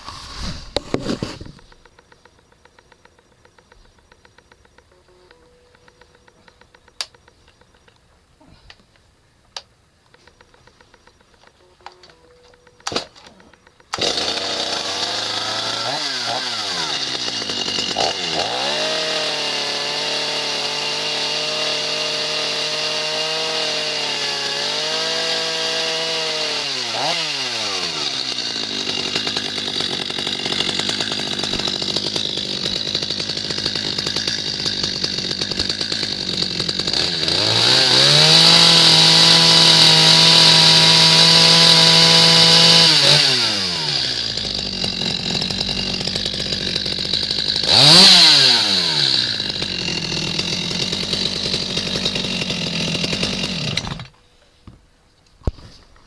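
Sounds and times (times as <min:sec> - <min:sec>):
chainsaw revving and idling: 0:12.6 - 0:54.2.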